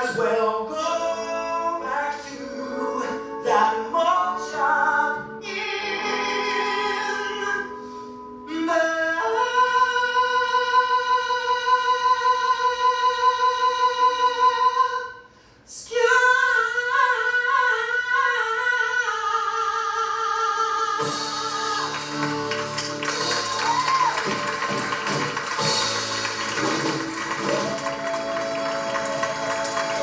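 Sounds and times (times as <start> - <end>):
band playing: 21.0 - 30.0.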